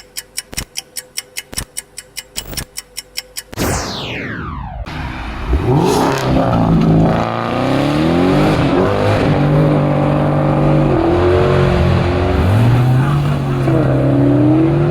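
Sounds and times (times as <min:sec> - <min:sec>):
car engine revving and accelerating: 0:04.9 - 0:14.9.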